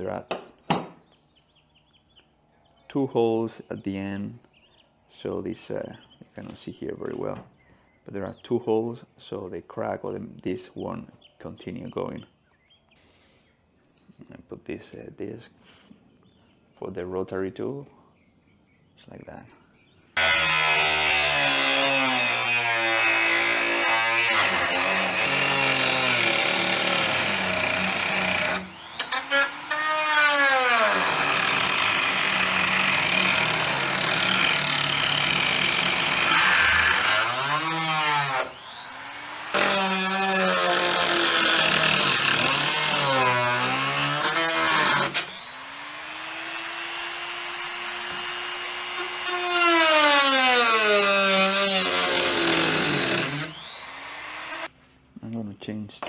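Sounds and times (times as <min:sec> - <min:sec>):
rotary tool cutting plastic: 0:20.2 - 0:54.7.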